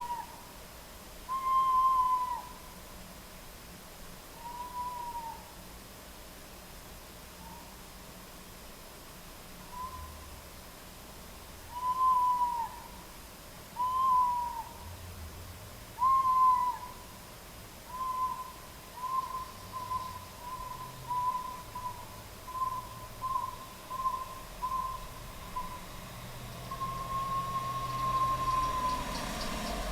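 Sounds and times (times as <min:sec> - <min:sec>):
owl hooting: 0:00.0 - 0:00.5, 0:01.3 - 0:02.8, 0:04.3 - 0:05.6, 0:07.3 - 0:07.8, 0:09.7 - 0:10.3, 0:11.7 - 0:13.1, 0:13.8 - 0:14.9, 0:16.0 - 0:17.2, 0:17.8 - 0:29.9.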